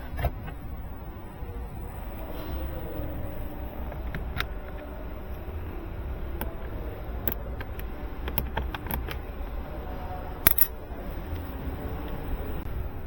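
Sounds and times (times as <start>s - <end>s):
low steady rumble: 0.0s - 13.0s
plastic clicks and snaps: 6.4s - 9.2s, 10.4s - 10.8s.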